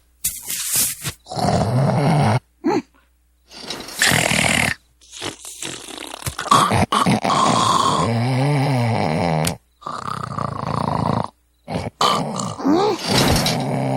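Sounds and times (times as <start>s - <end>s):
loud snoring: 1.2s - 2.4s, 3.5s - 13.9s
short snort: 3.5s - 8.1s.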